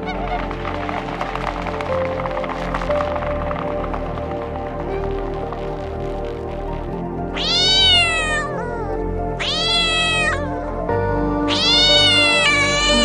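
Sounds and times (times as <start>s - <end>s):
background music: 0.0s - 13.0s
cat meowing: 7.3s - 10.9s, 11.5s - 13.0s.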